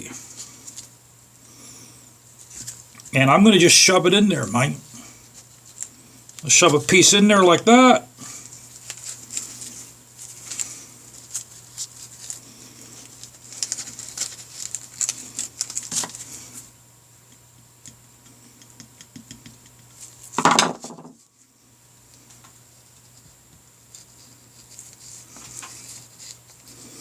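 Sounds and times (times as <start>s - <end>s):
steady low hum: 0.0s - 27.0s
small clicks and taps: 17.3s - 19.9s.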